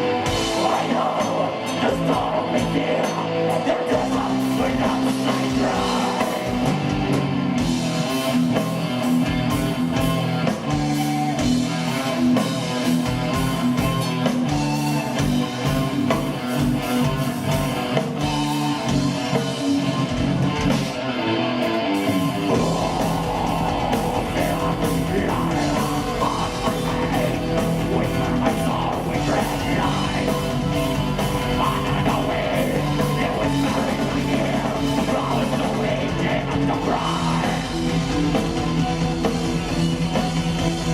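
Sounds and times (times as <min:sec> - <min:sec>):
drums: 0:00.0 - 0:40.9
metal band playing: 0:00.0 - 0:40.9.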